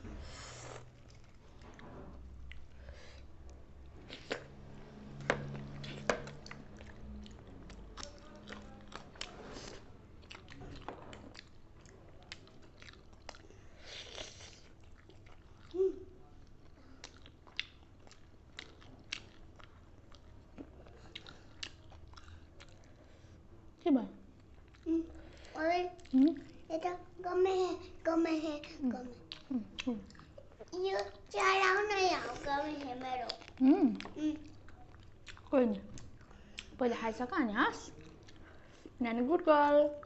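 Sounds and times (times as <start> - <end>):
chewing and biting food: 5.4 - 9.5, 10.2 - 15.8, 16.4 - 23.0, 32.7 - 36.8
food crunching: 5.4 - 15.8.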